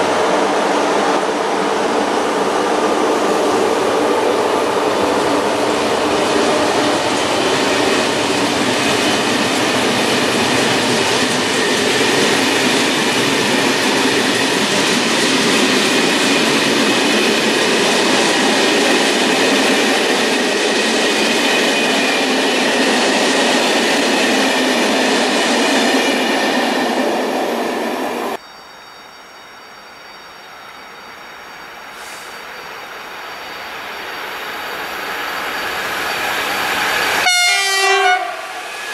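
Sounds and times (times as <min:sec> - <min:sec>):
train wheels clattering on rails: 0:02.8 - 0:28.3.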